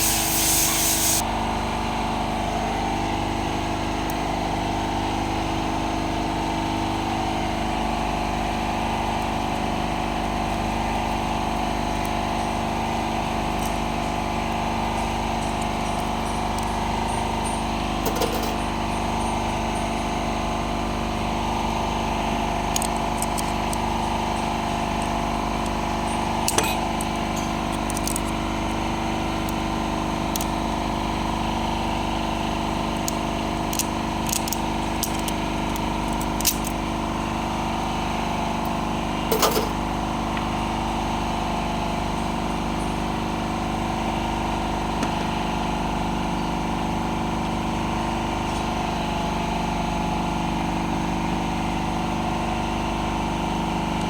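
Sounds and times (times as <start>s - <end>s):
mechanical hum: 0.0s - 54.0s
sharp metal clicks: 26.4s - 28.4s, 33.0s - 36.8s.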